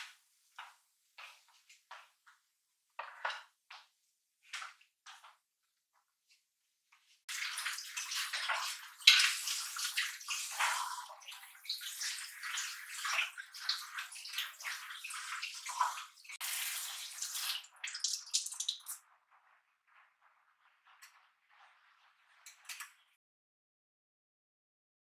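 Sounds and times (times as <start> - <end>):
tap water splashing: 7.3 - 19.0.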